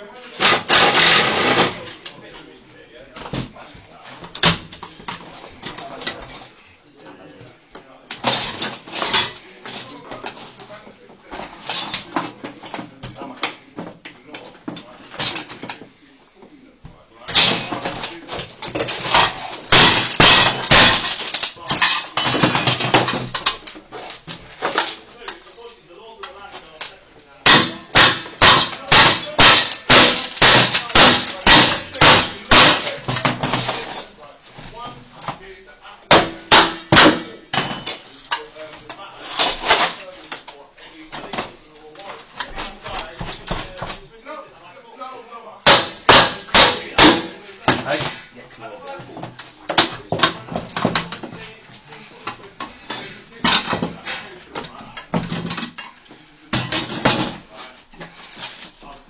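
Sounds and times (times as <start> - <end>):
metal tools clinking: 17.3 - 35.3, 36.4 - 40.6.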